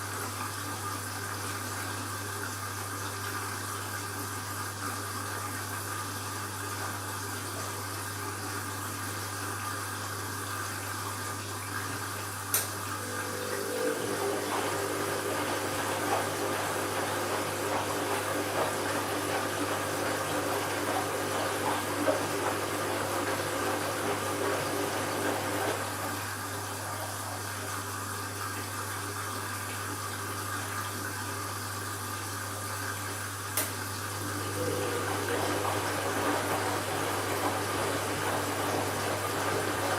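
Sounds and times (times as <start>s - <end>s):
water flowing into washing machine: 0.0s - 39.9s
motor tone with splashing: 3.6s - 29.3s, 32.6s - 39.9s
steady hum: 12.9s - 21.2s.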